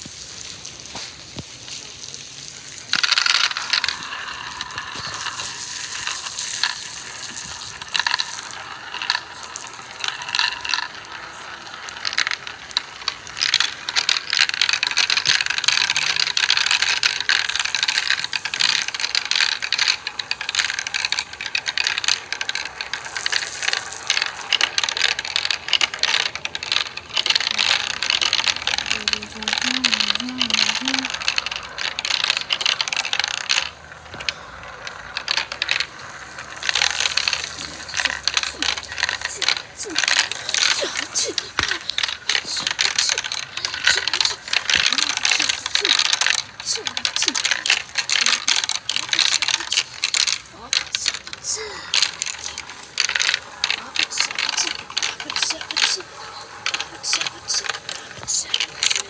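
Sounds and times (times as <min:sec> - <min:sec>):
marbles rolling and clattering: 0:00.0 - 0:59.0.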